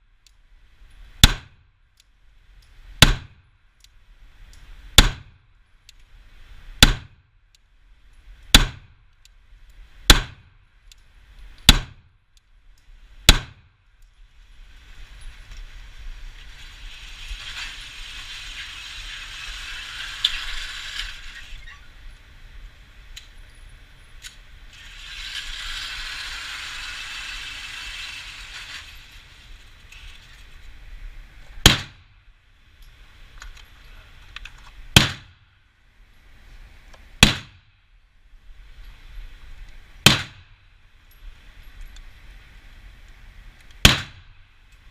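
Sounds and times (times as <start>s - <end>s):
pistol shots: 31.6s - 32.0s, 35.0s - 35.4s, 37.2s - 37.6s, 40.0s - 40.4s, 43.8s - 44.2s.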